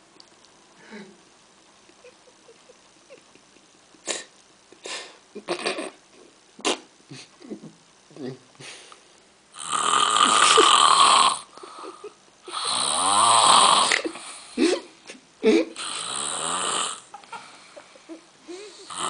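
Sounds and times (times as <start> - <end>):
man snoring heavily: 9.5 - 11.5, 12.5 - 14.5, 15.8 - 17.1, 18.7 - 19.0.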